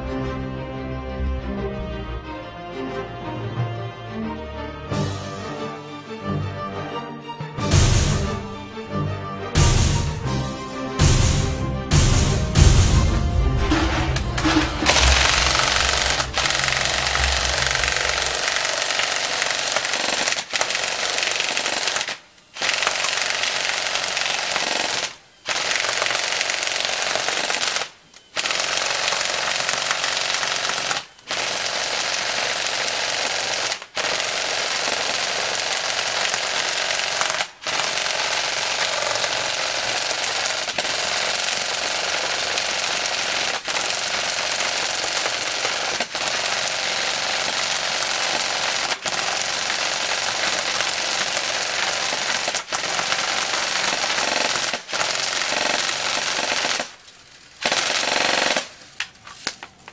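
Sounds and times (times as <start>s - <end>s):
airsoft gun firing full auto: 14.4s - 58.8s.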